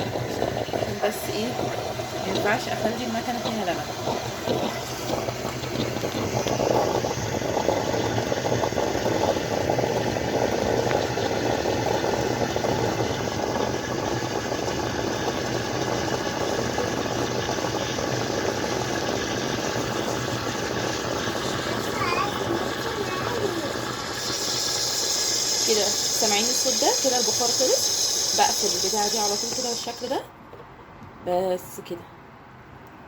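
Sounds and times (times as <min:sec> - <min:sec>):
espresso machine steaming milk: 0:00.0 - 0:30.2.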